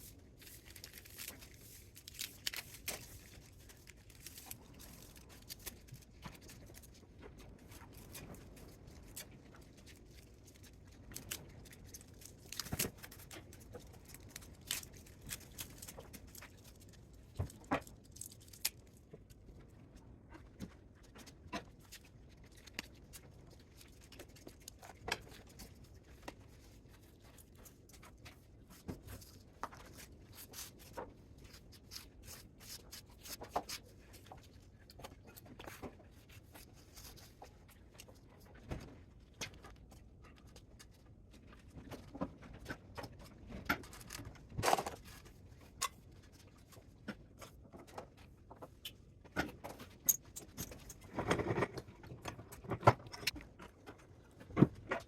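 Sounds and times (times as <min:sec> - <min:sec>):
metal parts and tools clicking: 0:50.1 - 0:51.1.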